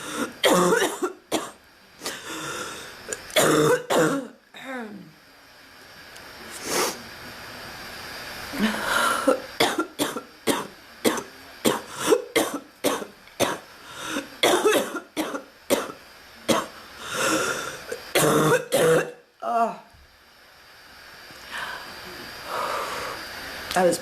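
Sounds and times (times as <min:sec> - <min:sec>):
woman coughing: 0:00.4 - 0:01.6, 0:03.4 - 0:04.3, 0:09.2 - 0:13.6, 0:14.4 - 0:16.7, 0:18.2 - 0:19.2
drawn-in breaths: 0:02.0 - 0:03.2, 0:13.8 - 0:14.4, 0:16.8 - 0:18.0, 0:21.3 - 0:23.6.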